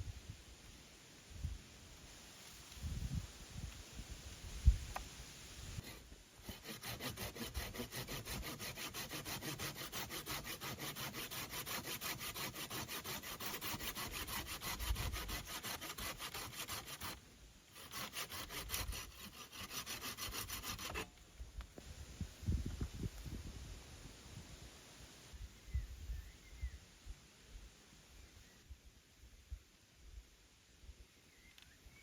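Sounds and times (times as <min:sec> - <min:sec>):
hand saw cutting wood: 0:05.8 - 0:21.2.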